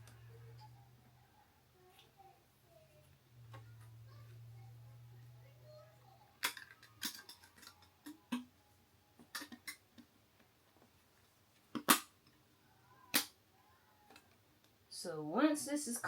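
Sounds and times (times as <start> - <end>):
plastic parts clicking and tapping: 6.4 - 8.5, 9.2 - 10.9, 11.6 - 12.4.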